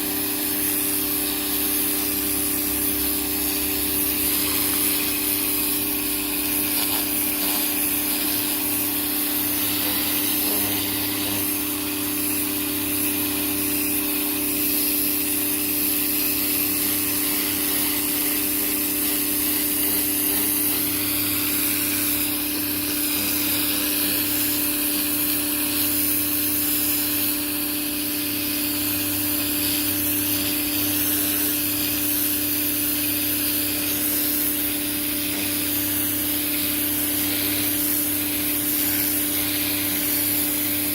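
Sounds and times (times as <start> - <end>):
pressure washer motor hum: 0.0 - 40.9
water jet hissing: 0.0 - 40.9.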